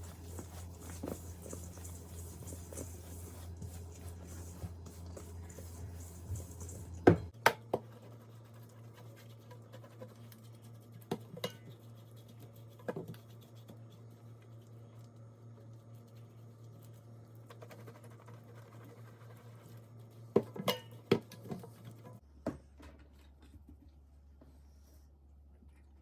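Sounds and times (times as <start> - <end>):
soft scratching and scraping: 0.0 - 7.0.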